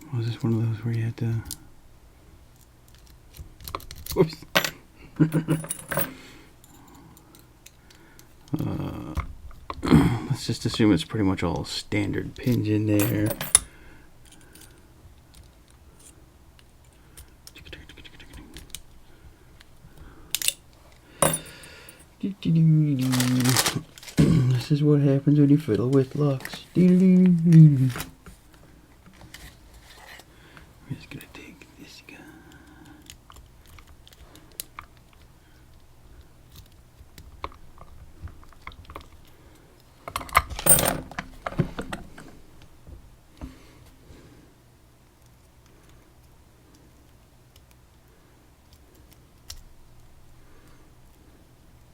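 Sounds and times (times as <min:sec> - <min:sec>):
metal lock parts clicking: 0:03.0 - 0:06.8, 0:12.5 - 0:13.7, 0:20.3 - 0:20.6, 0:21.2 - 0:21.6, 0:40.1 - 0:41.6
metal clinking rattle: 0:04.4 - 0:07.0, 0:12.9 - 0:14.7, 0:21.2 - 0:22.0, 0:40.5 - 0:41.2.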